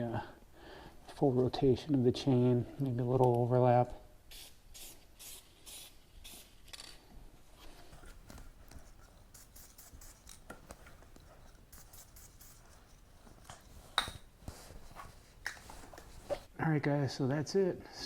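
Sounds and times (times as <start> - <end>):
aerosol spray hissing: 4.3 - 6.5, 7.9 - 16.5
handling ticks and scrapes: 7.6 - 16.5.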